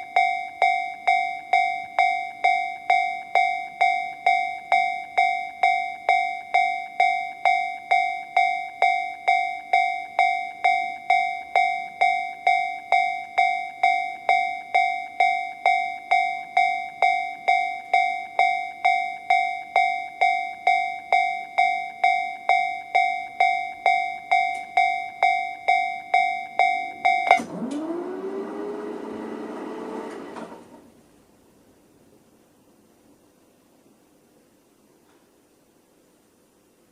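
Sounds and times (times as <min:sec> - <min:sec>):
level crossing electronic bell: 0:00.0 - 0:30.0
whirring rising in pitch: 0:27.2 - 0:30.8.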